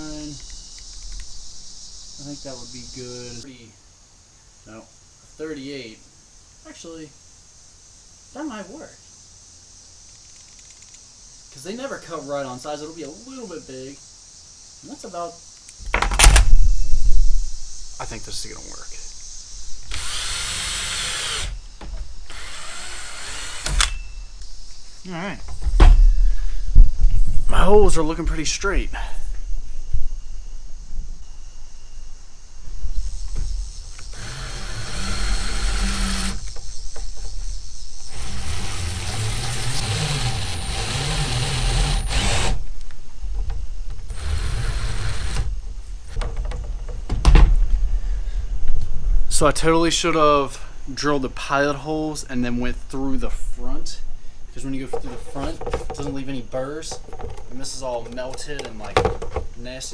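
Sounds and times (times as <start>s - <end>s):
power drill with hole saw cutting: 19.9s - 21.6s, 22.3s - 23.9s, 34.0s - 36.5s, 38.1s - 42.6s, 44.1s - 45.5s.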